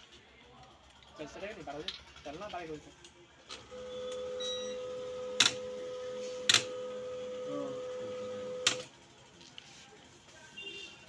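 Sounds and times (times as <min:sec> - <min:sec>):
printer mechanism clacks: 0:03.5 - 0:08.9
laser printer humming: 0:03.6 - 0:08.9.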